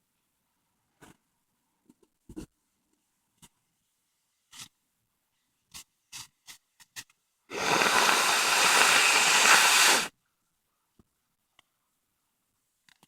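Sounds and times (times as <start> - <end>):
person blowing nose: 7.5 - 10.1.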